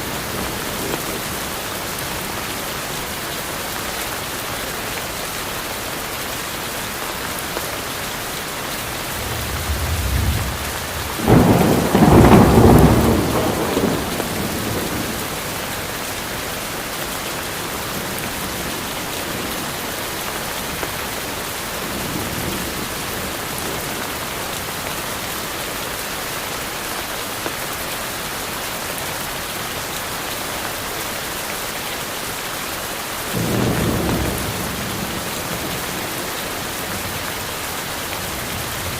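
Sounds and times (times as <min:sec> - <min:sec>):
heavy rain on foliage: 0:00.0 - 0:38.9
thunder rumbling: 0:08.8 - 0:15.6
loud thunderclap: 0:09.0 - 0:15.2.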